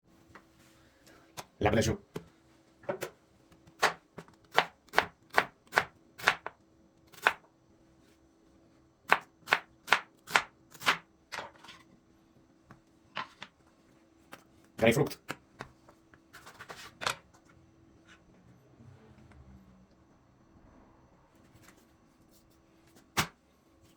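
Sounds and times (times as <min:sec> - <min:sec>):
knife chopping on cutting board: 0:03.7 - 0:06.5, 0:07.1 - 0:07.4, 0:09.1 - 0:11.0.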